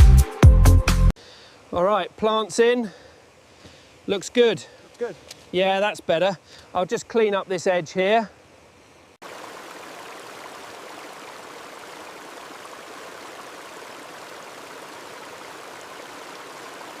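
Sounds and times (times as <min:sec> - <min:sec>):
running water from pond feature: 0:09.2 - 0:17.0.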